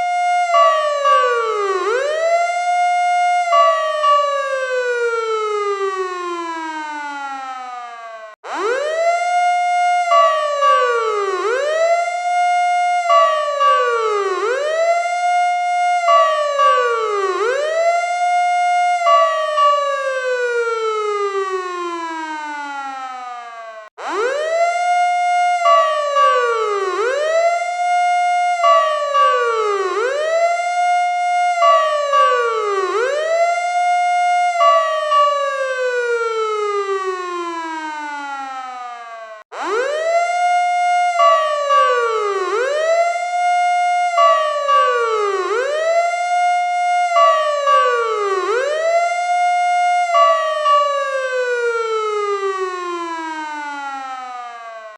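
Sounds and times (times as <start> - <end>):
fire truck siren wailing: 0.0 - 54.9.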